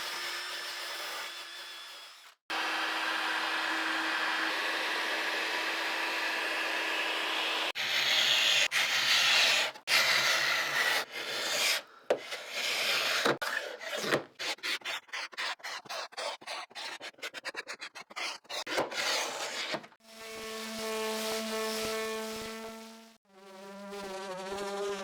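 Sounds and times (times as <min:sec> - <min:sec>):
hand tool rasping wood: 0:05.6 - 0:20.0.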